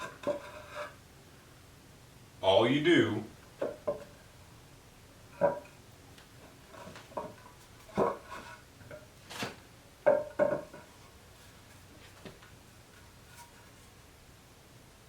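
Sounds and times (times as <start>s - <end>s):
wooden pieces knocking: 0.0s - 0.9s, 3.6s - 4.2s, 5.4s - 5.8s, 6.7s - 9.1s, 10.0s - 10.9s.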